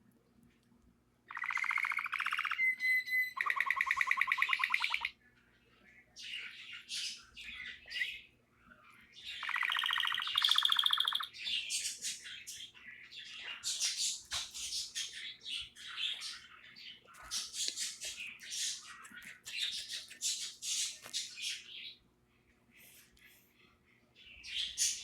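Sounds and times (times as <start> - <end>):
canary chirping and whistling: 1.3 - 5.1, 9.3 - 12.8, 13.4 - 16.5, 24.3 - 25.0.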